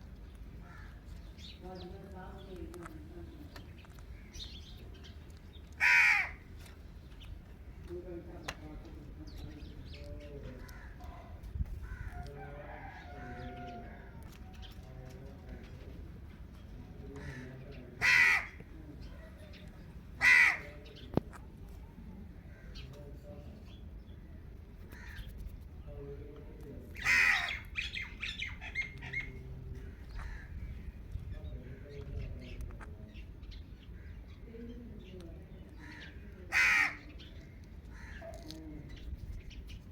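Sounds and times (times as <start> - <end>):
parakeet calls and chatter: 0.0 - 39.9
faint chirps and clicks: 1.1 - 5.8, 6.5 - 12.3.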